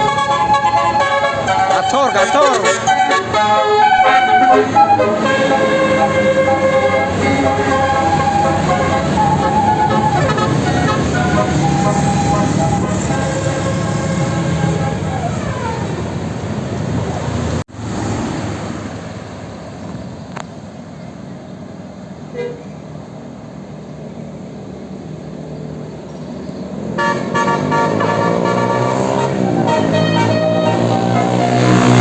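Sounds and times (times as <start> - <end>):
multi-tone air horn melody: 0.0 - 16.0, 27.0 - 32.0
road and engine noise: 0.0 - 32.0.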